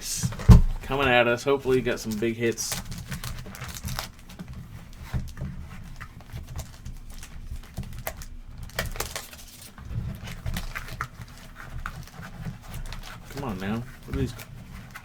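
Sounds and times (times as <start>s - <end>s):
cardboard and plastic rustling: 0.0s - 15.0s.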